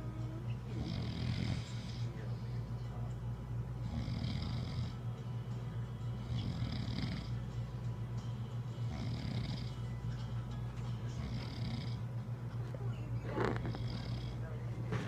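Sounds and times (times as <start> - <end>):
woman snoring: 0.0 - 2.4, 3.8 - 5.0, 6.2 - 7.4, 8.9 - 9.9, 11.1 - 12.1, 13.2 - 14.4.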